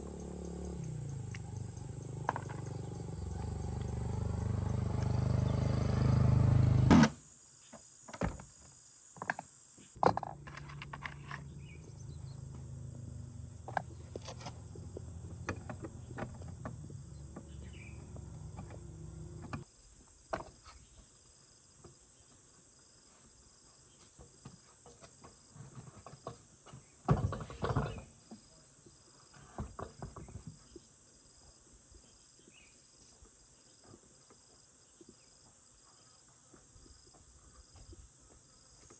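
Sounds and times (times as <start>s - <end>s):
quieter low hum: 0.0s - 7.1s, 10.0s - 19.6s
loud low hum: 0.0s - 7.2s, 10.1s - 19.6s
crickets chirping: 0.0s - 26.8s.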